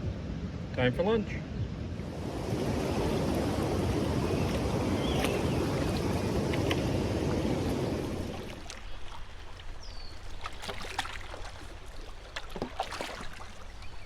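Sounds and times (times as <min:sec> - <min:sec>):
paddle splashes and knocks: 0:02.4 - 0:14.0
water dripping off paddle: 0:03.2 - 0:14.0.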